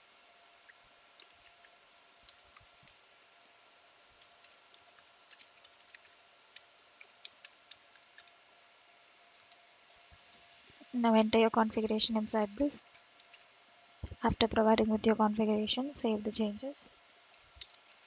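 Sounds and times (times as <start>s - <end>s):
low steady hiss and hum: 0.0s - 18.0s
computer keys typing: 1.2s - 3.3s, 4.2s - 8.4s, 9.3s - 9.6s, 11.8s - 13.4s, 17.6s - 18.0s.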